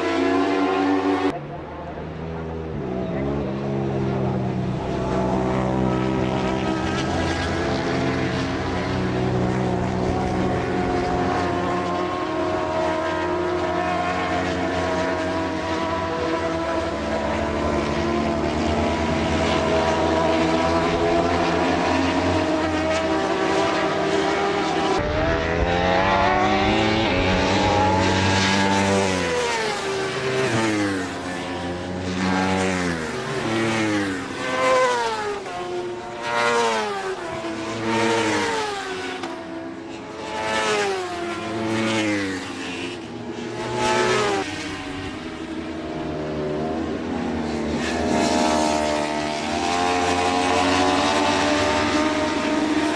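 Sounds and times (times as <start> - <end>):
racing motorcycle engine revving: 2.3 - 52.9.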